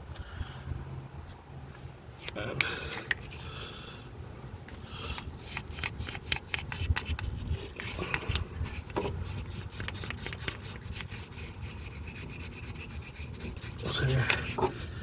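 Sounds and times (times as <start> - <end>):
brush scrubbing metal: 5.3 - 15.0.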